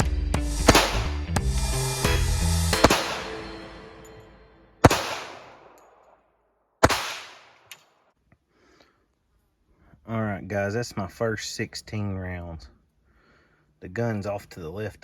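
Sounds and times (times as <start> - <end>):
music chord: 0.0 - 4.9
pistol shots with echo: 0.7 - 1.2, 2.8 - 4.1, 4.8 - 6.0, 6.8 - 7.7.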